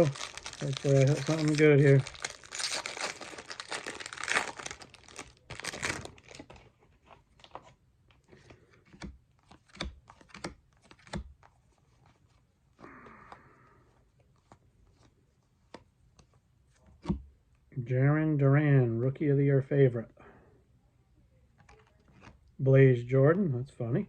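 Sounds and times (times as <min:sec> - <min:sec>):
plastic wrapper tearing and crinkling: 0:00.0 - 0:06.7
cards clicking and tapping: 0:08.8 - 0:11.5.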